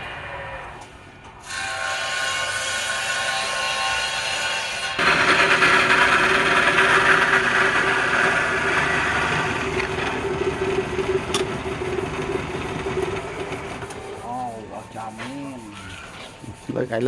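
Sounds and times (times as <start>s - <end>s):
machine motor running: 5.0s - 15.1s.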